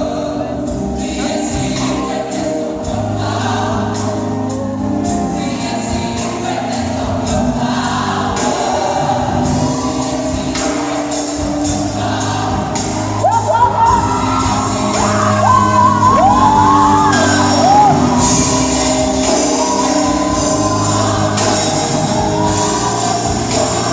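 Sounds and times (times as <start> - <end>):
gospel choir singing: 0.0 - 23.9
instrumental accompaniment: 0.0 - 23.9
percussion beat: 0.7 - 23.9.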